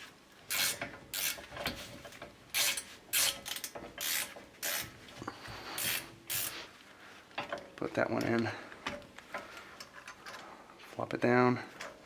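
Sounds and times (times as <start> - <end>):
ratchet wrench clicking: 0.5 - 1.5, 2.6 - 5.0, 5.8 - 6.6.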